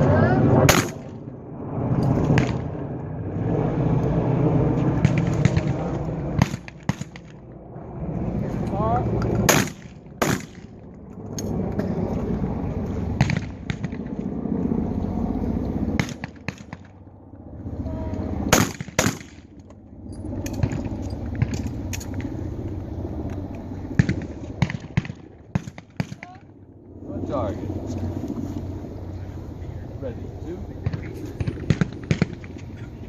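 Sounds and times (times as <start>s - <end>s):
steady low rumble: 0.0s - 33.0s
shotgun shots: 0.7s - 1.1s, 9.5s - 10.7s, 18.5s - 19.5s.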